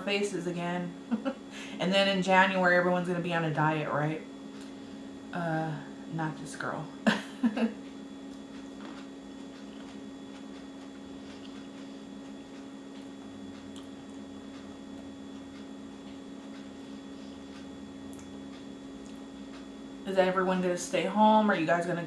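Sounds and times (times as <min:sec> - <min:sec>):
low background hum: 0:00.0 - 0:22.0
wet chewing of fruit: 0:07.8 - 0:19.8.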